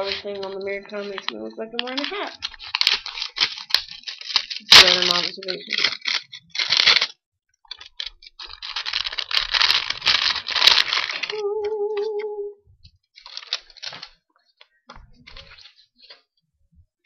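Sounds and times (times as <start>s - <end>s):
paper envelope tearing: 0.0s - 12.3s, 13.1s - 14.2s, 15.2s - 16.3s
person humming: 11.3s - 12.6s.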